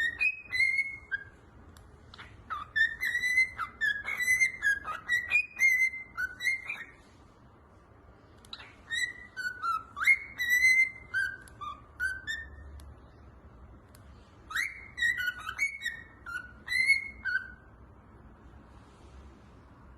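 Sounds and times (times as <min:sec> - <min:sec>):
small bird whistling: 0:00.0 - 0:07.2, 0:08.5 - 0:13.2, 0:14.1 - 0:17.8.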